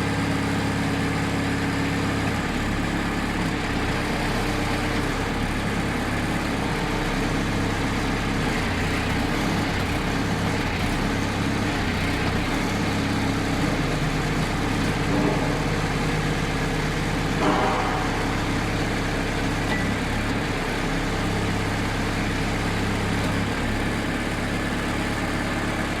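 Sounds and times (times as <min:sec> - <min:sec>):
drilling rig engine running: 0:00.0 - 0:26.0
short metal clank: 0:17.4 - 0:18.6.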